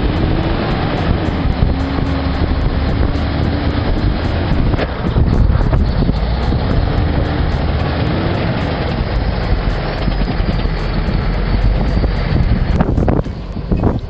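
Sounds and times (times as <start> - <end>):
heavy vehicle engine running: 0.0 - 14.0.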